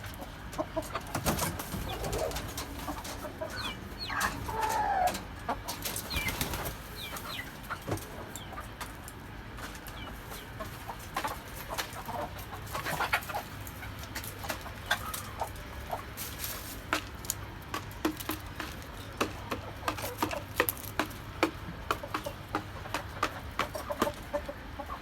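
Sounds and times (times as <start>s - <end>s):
chickens clucking: 0.0s - 25.0s.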